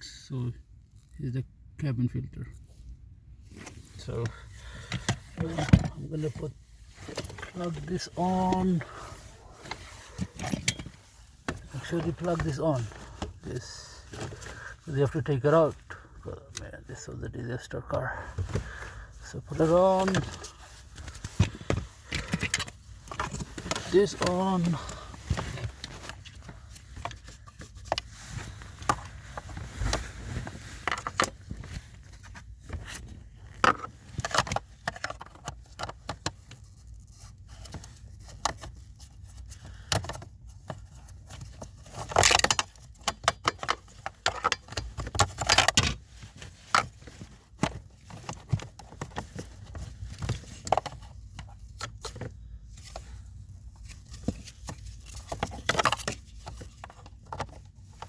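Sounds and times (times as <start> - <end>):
car parts clicking and knocking: 4.1 - 14.8, 19.5 - 29.7, 30.4 - 36.9, 37.6 - 53.1.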